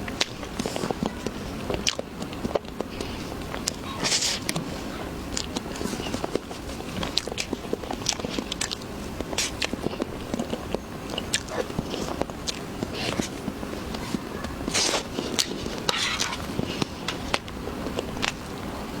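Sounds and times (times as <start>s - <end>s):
biting and wet chewing: 0.0s - 19.0s
mouth clicks: 5.3s - 18.4s
crackly mouth smacks: 5.3s - 18.5s.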